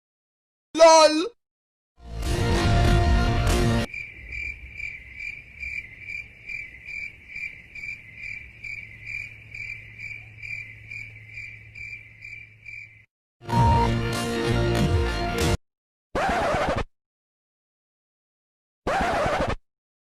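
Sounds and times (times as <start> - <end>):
cricket chirping: 3.9 - 13.1.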